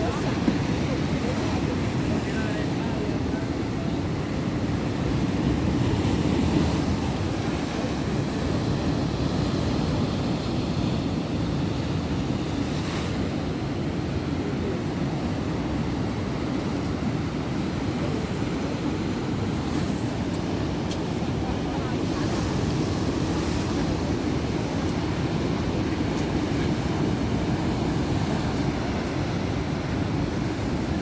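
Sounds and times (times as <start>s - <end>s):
heavy surf breaking: 0.0s - 31.0s.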